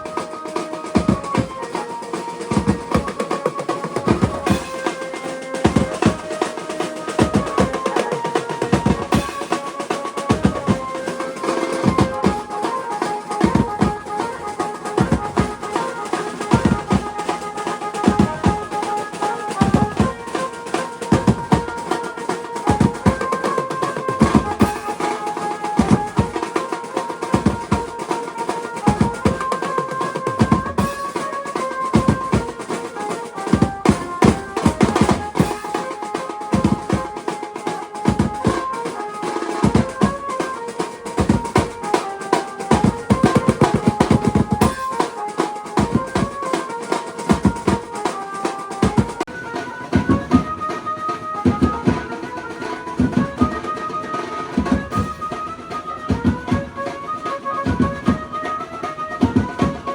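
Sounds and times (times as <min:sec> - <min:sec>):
driving drum beat: 0:00.0 - 0:59.9
stepping melody: 0:00.0 - 0:59.9.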